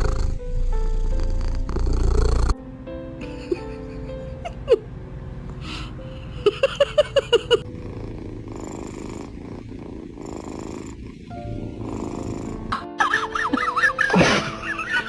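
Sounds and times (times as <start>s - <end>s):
pet purring: 0.0s - 2.6s, 7.2s - 13.0s.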